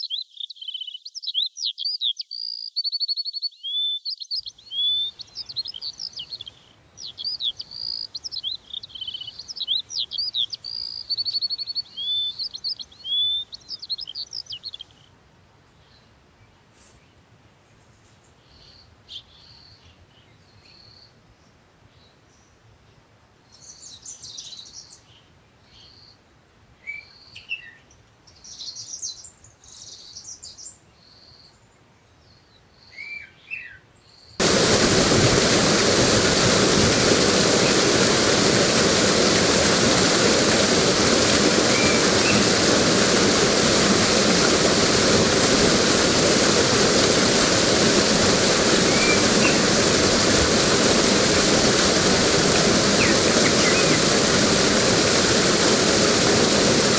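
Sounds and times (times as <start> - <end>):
rushing water: 34.4 - 56.9
songbirds chirping and whistling: 34.4 - 56.9.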